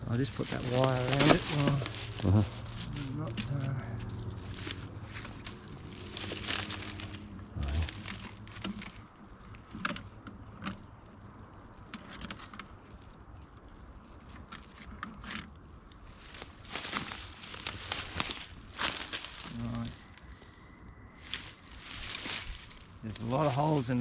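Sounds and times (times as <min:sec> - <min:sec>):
wire being wrapped: 0:00.0 - 0:20.5.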